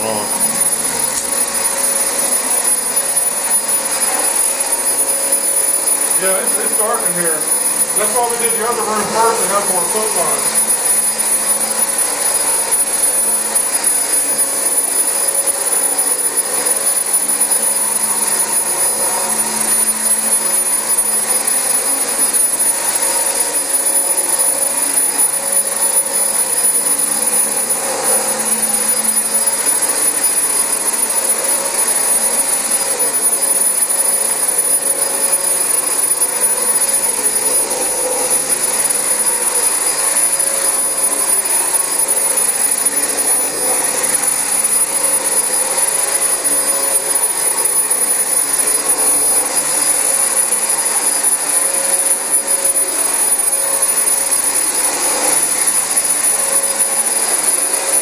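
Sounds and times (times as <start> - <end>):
vacuum cleaner running: 0.0 - 49.9.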